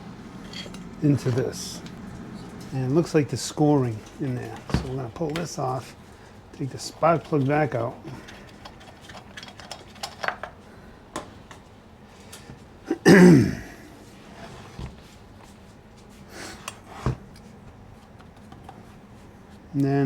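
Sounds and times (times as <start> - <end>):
throat-clearing sound: 12.9 - 13.9.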